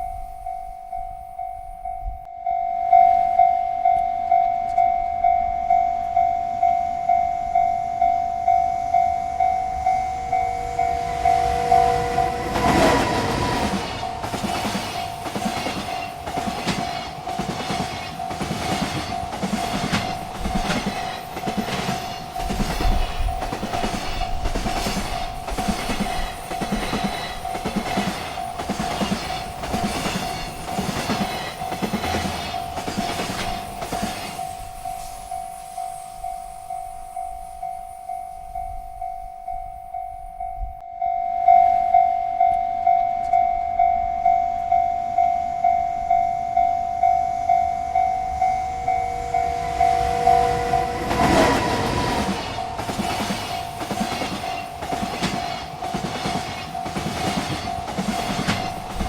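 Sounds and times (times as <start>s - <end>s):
railroad crossing bell ringing: 0.0s - 59.0s
freight train wheels clacking: 7.0s - 40.2s, 42.4s - 59.0s.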